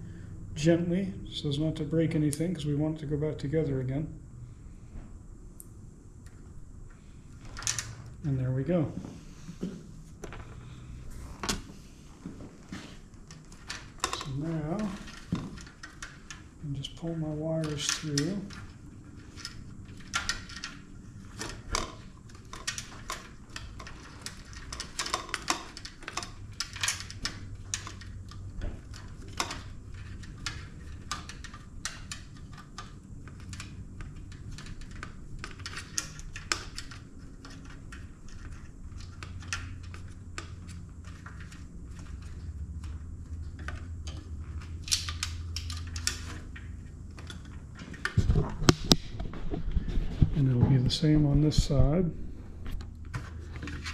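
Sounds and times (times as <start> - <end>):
wiring clicks taps and rustles: 11.4 - 50.3.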